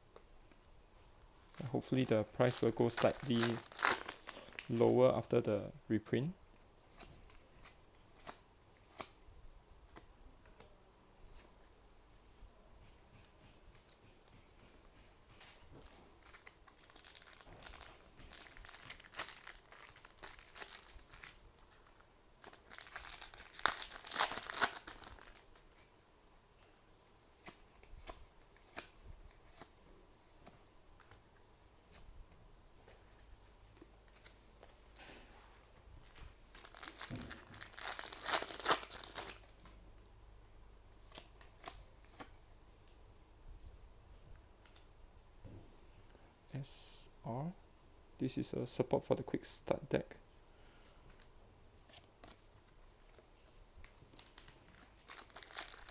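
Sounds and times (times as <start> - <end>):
foil wrappers tearing and crinkling: 1.4 - 5.0, 16.2 - 25.5, 36.0 - 39.5, 54.1 - 55.9.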